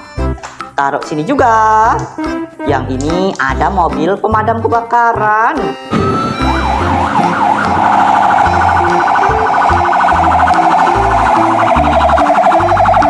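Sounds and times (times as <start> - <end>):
music with bass beat: 5.6 - 13.0
toy siren wailing: 5.7 - 13.0.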